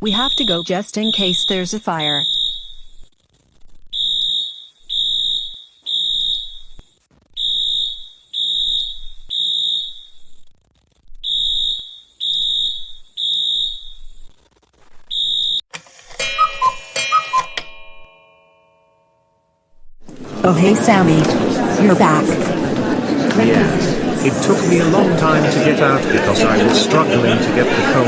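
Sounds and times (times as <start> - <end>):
fire alarm beeps: 0.0 - 3.0, 3.9 - 6.8, 7.4 - 10.2, 11.2 - 14.1, 15.1 - 15.6, 16.2 - 18.1
ding-dong chime: 16.2 - 19.4.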